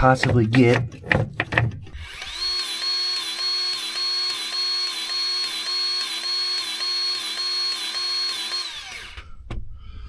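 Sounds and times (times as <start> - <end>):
grease gun motor whining: 1.4 - 9.4.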